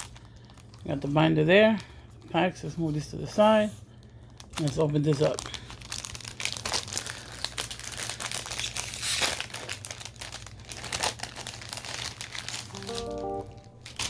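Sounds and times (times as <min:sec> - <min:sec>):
packaging crinkling and tearing: 0:00.0 - 0:02.3, 0:03.9 - 0:14.0
plucked music notes: 0:12.7 - 0:14.0.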